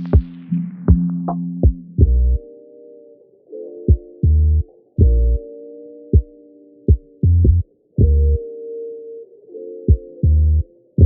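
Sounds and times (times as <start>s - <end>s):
deep bass notes: 0.0s - 2.4s, 4.2s - 5.4s, 7.2s - 8.4s, 10.2s - 10.6s
kick drum thumps: 1.6s - 2.2s.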